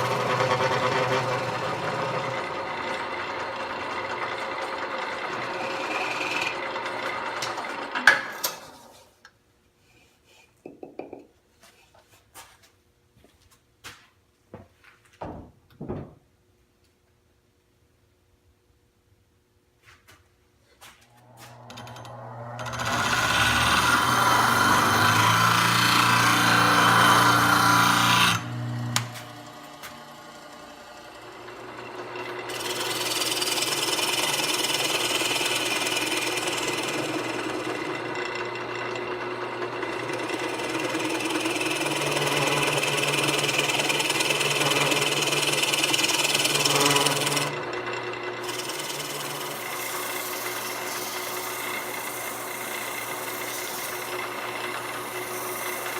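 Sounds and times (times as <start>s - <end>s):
wood lathe scraping hiss: 0.0s - 7.9s, 20.8s - 55.9s
low motor hum: 20.8s - 33.0s.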